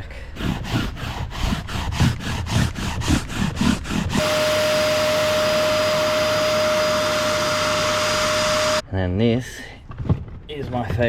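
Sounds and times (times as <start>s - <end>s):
upholstery cleaner whining: 4.1s - 8.8s.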